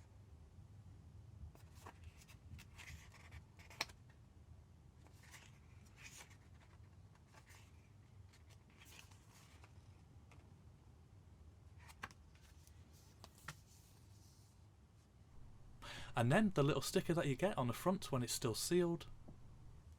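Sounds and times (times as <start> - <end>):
paper pages rustling: 5.1 - 10.4, 11.7 - 14.4
low steady hum: 14.9 - 19.9.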